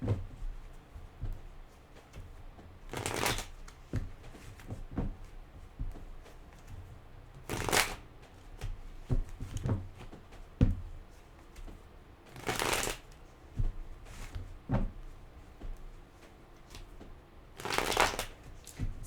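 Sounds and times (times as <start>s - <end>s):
cards shuffling: 7.5s - 8.0s, 12.4s - 13.0s, 17.6s - 18.8s.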